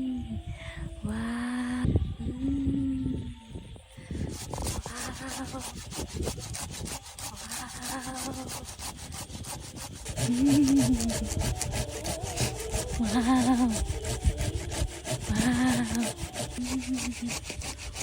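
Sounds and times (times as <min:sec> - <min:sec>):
saw cutting wood: 0:04.1 - 0:18.0.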